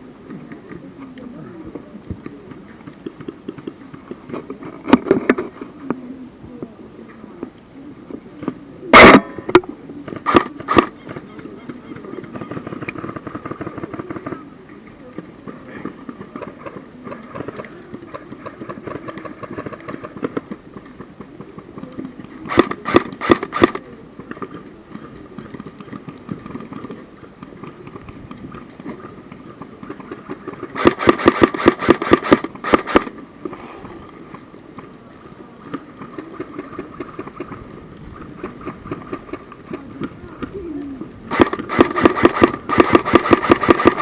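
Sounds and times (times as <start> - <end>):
airsoft guns firing: 8.9 - 9.4, 10.2 - 11.0, 22.5 - 23.8, 30.5 - 33.2, 41.3 - 44.0.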